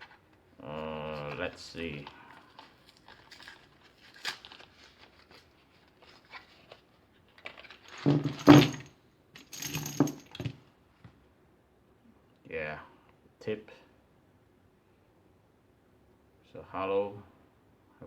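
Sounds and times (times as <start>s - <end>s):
cartridges clinking and rattling: 7.9s - 10.5s.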